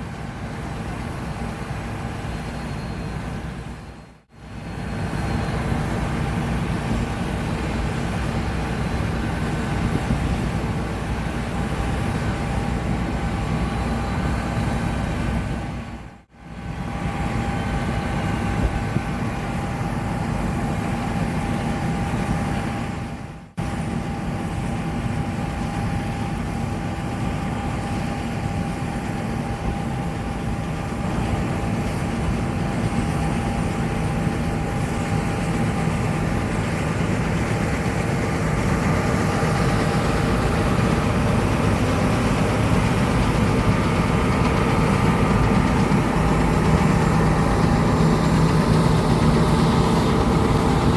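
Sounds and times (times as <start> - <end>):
combine harvester engine drone: 0.0 - 50.9
thin steady whine: 0.0 - 50.9.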